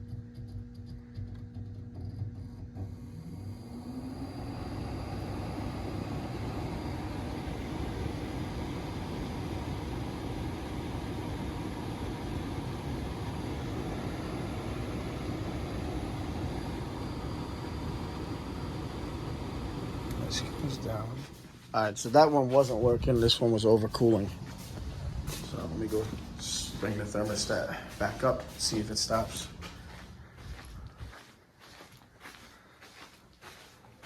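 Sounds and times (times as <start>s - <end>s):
fan motor spinning up: 0.0s - 30.8s
rush of air: 24.2s - 31.0s.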